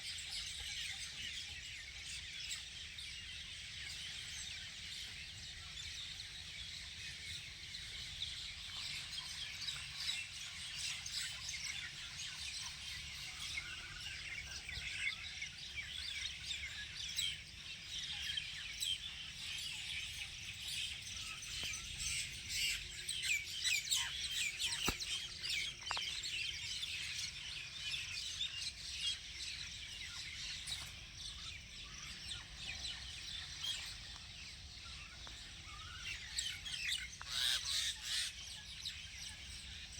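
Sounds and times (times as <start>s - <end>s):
birds chirping chorus: 0.0s - 39.9s.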